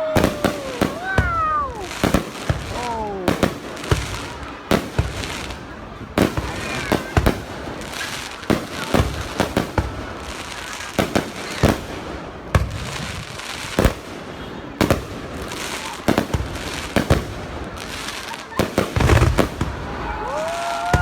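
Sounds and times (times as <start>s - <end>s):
background noise: 0.0s - 21.0s
fireworks exploding: 0.0s - 21.0s.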